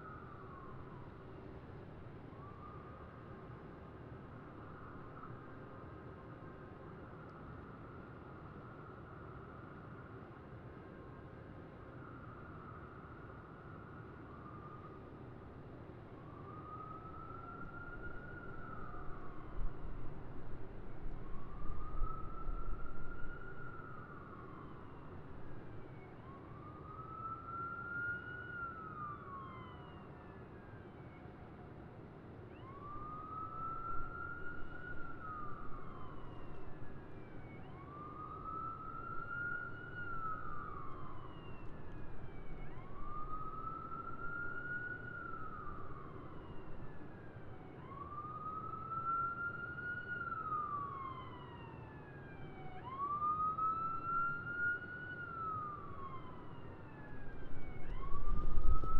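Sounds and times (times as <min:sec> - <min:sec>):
emergency siren wailing: 0:02.3 - 0:03.2, 0:16.2 - 0:58.9
city traffic rumble: 0:32.1 - 0:58.9.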